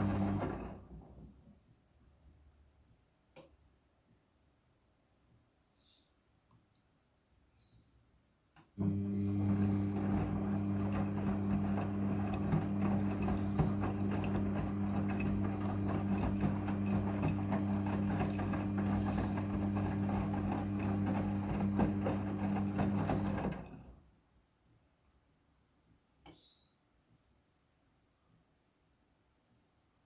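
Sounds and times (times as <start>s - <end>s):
washing machine humming: 0.0s - 1.3s, 8.8s - 24.0s.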